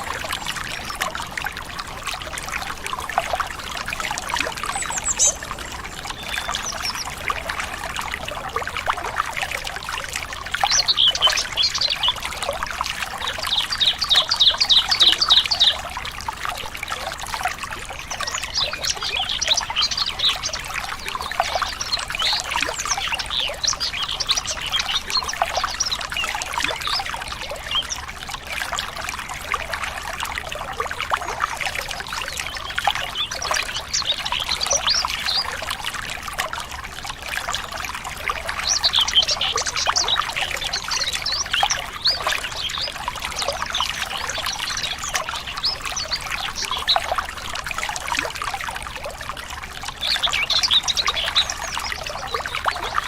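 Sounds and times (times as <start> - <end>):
water trickling: 0.0 - 53.0
birds chirping: 4.0 - 7.6.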